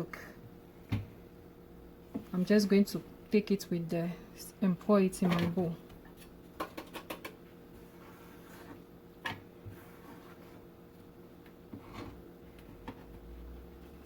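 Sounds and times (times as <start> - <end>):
kitchen clicks and taps: 6.6 - 7.4.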